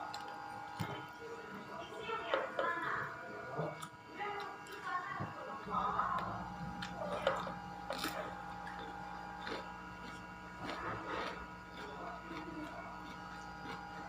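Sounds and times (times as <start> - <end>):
electrical hum: 0.0 - 14.0
crunching raw vegetables: 6.1 - 14.0.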